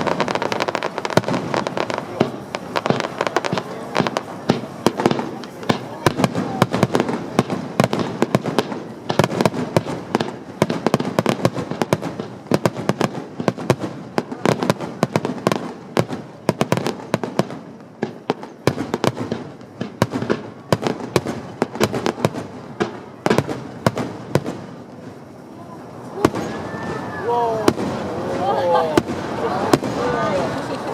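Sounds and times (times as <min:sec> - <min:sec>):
fireworks bangs: 0:00.0 - 0:30.9.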